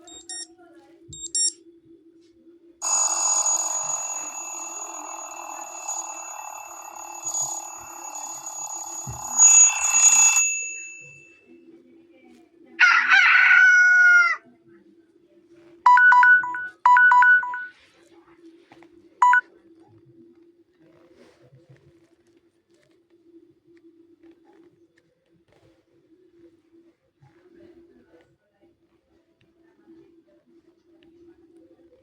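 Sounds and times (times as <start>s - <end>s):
repeated two-note beeps: 0.0s - 0.4s, 15.9s - 17.7s
phone ringtone with rushing hiss: 2.8s - 11.4s, 15.9s - 17.7s, 19.2s - 19.4s.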